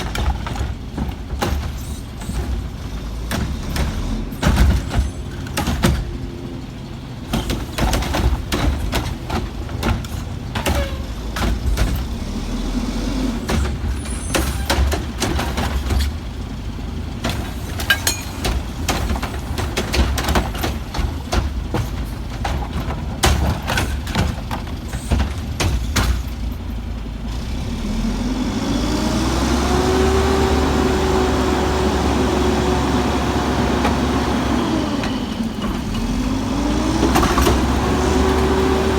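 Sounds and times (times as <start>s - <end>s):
sharp knocks and clanks: 0.0s - 6.4s, 7.3s - 12.3s, 13.4s - 16.2s, 17.2s - 26.7s
diesel engine running: 0.0s - 38.9s.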